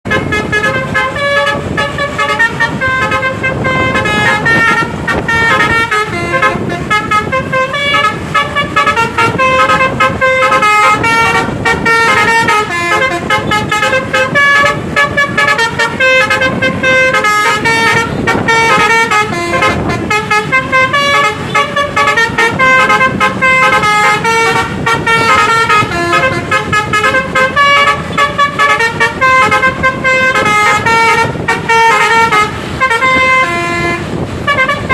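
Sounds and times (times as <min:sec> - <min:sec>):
musical horn playing melody: 0:00.0 - 0:34.9.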